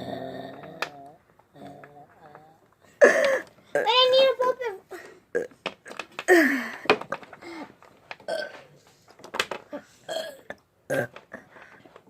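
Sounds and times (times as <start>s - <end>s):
child burping: 0.0s - 2.4s, 3.0s - 4.0s, 5.0s - 5.6s, 6.3s - 6.8s, 8.3s - 8.6s, 9.8s - 11.5s.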